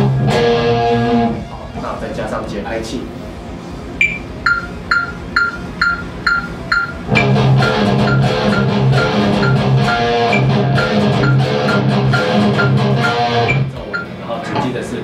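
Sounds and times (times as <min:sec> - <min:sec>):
electric guitar riff: 0:00.0 - 0:01.8, 0:04.3 - 0:13.9
metronome clicking: 0:04.0 - 0:14.1.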